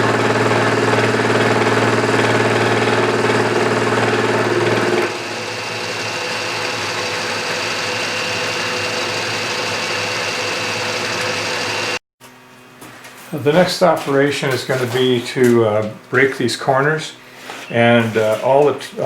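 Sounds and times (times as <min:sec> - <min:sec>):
milling cutter chattering on metal: 0:00.0 - 0:12.0.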